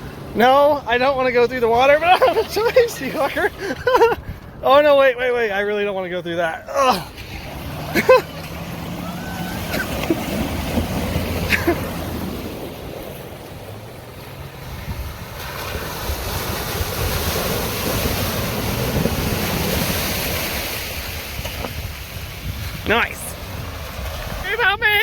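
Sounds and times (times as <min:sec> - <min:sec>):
water rushing and splashing: 0:00.0 - 0:25.0
wind noise on microphone: 0:03.5 - 0:04.7, 0:09.0 - 0:25.0
engine running low: 0:06.7 - 0:24.4.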